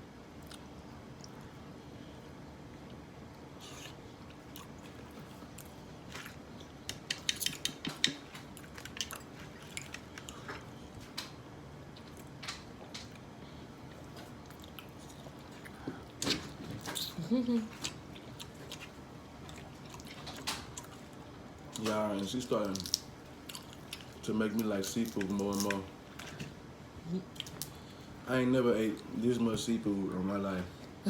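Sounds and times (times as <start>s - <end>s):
people chewing: 2.8s - 11.3s, 11.9s - 28.2s
crab shells cracking: 21.8s - 24.2s.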